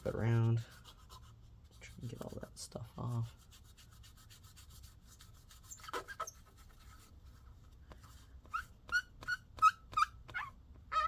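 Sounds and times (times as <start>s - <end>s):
paper towel rubbing: 0.0s - 11.0s
animal whining cries: 8.6s - 11.0s.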